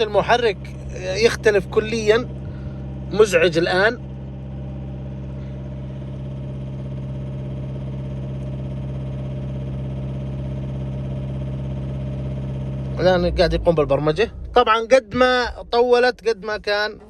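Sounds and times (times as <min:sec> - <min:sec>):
diesel engine idling harshly: 0:00.0 - 0:17.0.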